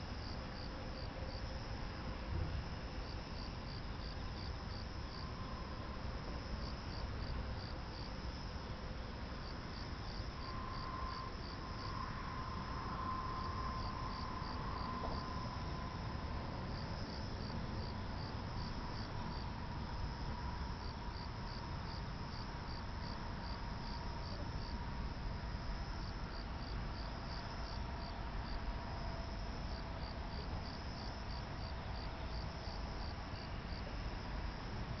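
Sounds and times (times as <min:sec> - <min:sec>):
crickets chirping: 0:00.0 - 0:35.0
steady low noise: 0:01.6 - 0:25.9.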